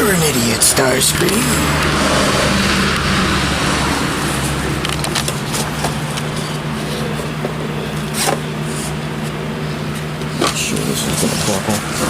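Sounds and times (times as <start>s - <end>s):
engine and road hum: 0.0s - 12.0s
handling clicks and rustles: 4.8s - 8.4s.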